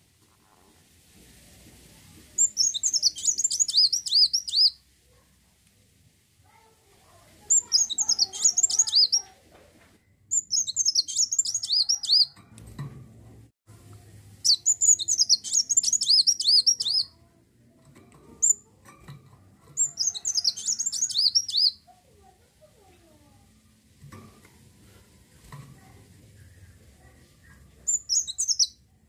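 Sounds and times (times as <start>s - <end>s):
sunbird chirping: 2.4s - 4.8s, 7.4s - 9.3s, 10.3s - 12.3s, 14.4s - 17.1s, 19.8s - 21.8s, 27.9s - 28.8s.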